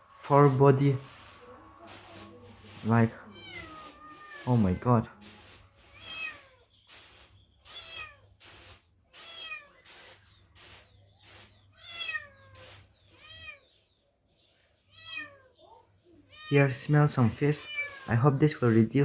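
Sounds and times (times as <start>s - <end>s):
kitten meowing: 3.2s - 4.8s, 5.9s - 6.6s.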